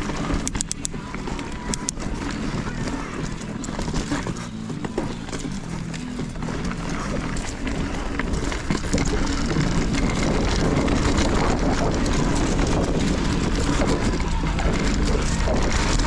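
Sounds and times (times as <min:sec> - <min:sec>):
bike rattling over trail: 0:00.0 - 0:16.0
bike tyres on rough dirt: 0:00.0 - 0:16.0
wind on microphone: 0:06.2 - 0:16.0.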